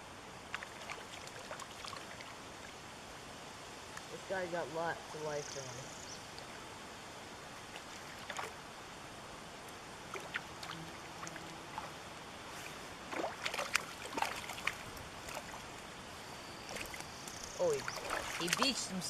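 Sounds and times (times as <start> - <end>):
fish splashing at surface: 13.1 - 15.6, 17.7 - 18.9
brook rushing: 16.7 - 19.0.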